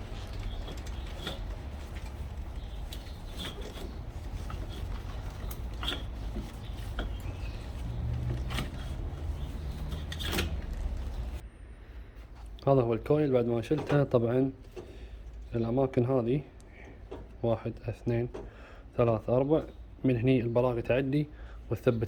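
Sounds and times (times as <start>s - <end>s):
light knocks and clicks: 0.0s - 11.4s
steady low hum: 0.0s - 13.5s.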